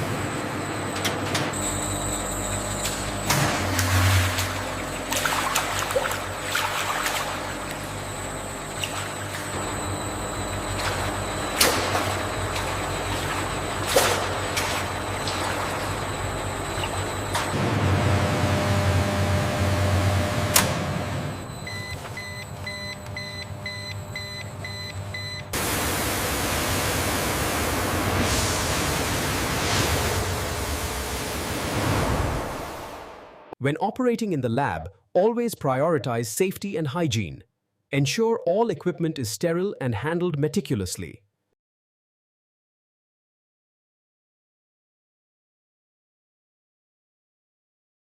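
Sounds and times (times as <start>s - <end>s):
steady machine hum: 0.0s - 33.6s
reversing alarm beeps: 7.9s - 17.6s, 21.3s - 25.6s.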